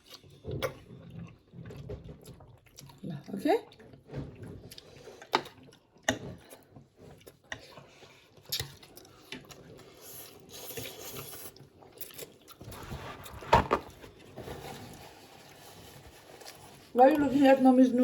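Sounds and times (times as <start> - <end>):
chewing and mouth noises: 0.0 - 12.8.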